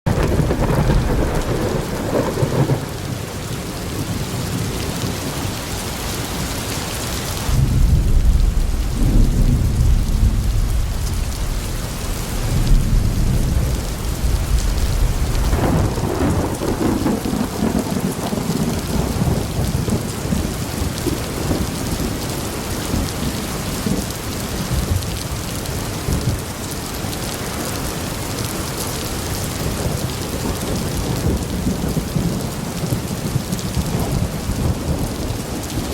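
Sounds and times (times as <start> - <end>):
steady rain hiss: 0.1 - 35.9
heavy low rumbling: 7.5 - 17.3.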